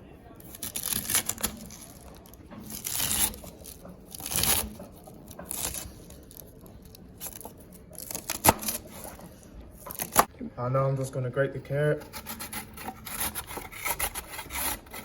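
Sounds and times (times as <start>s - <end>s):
knife slicing cabbage: 0.4s - 10.3s, 12.0s - 15.0s.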